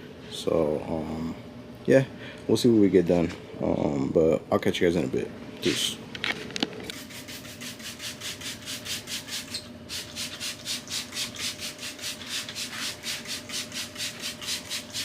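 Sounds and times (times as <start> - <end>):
brush scrubbing leather seat: 7.0 - 15.0.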